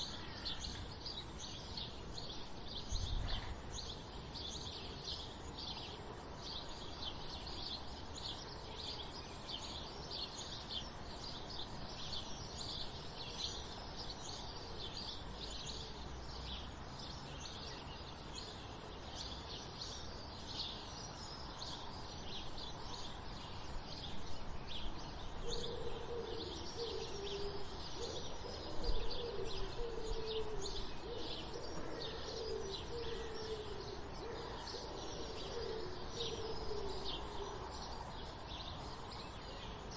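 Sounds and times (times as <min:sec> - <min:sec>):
sparrows chirping: 0:00.0 - 0:39.9
steady background hiss: 0:00.0 - 0:39.9
dove cooing: 0:25.4 - 0:37.7.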